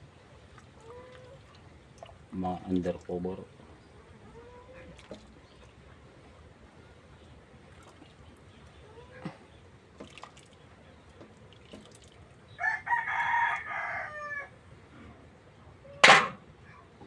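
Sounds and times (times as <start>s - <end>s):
rooster crowing: 12.6s - 14.6s.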